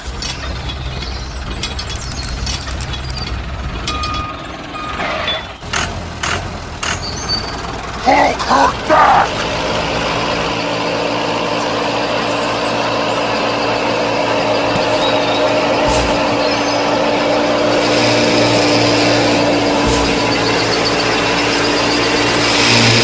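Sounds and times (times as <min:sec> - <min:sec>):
small motor humming: 0:09.3 - 0:23.0.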